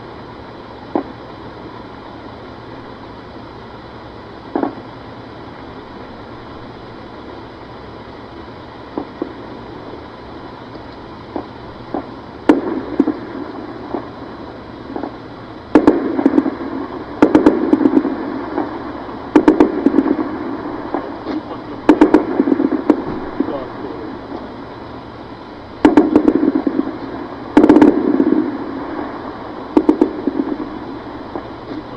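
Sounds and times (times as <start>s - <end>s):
single gunshots echoing: 11.4s - 14.2s, 14.9s - 24.5s, 25.8s - 31.5s
automatic gunfire bursts: 14.9s - 24.4s, 25.8s - 29.1s, 29.7s - 31.6s.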